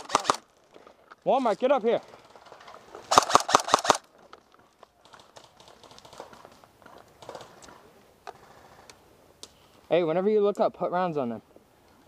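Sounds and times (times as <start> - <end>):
airsoft rifle shots: 0.0 - 0.4, 3.1 - 4.0.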